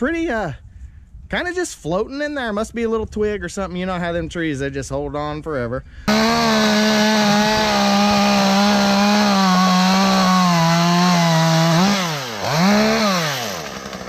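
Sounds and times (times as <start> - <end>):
chainsaw revving: 6.1 - 14.0.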